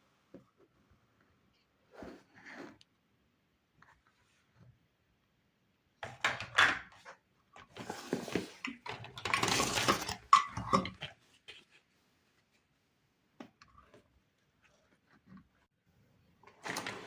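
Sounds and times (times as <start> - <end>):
plastic toy pieces clattering: 8.8 - 11.0.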